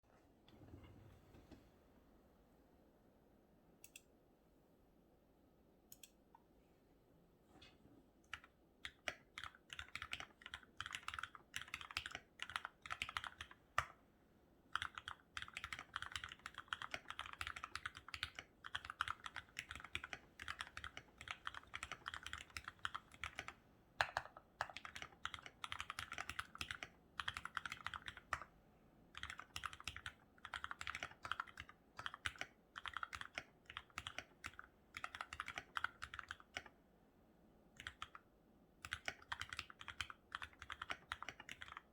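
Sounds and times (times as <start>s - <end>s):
mechanical keyboard typing: 8.3s - 13.9s, 14.7s - 28.5s, 29.1s - 36.7s, 37.8s - 38.2s, 38.8s - 41.9s.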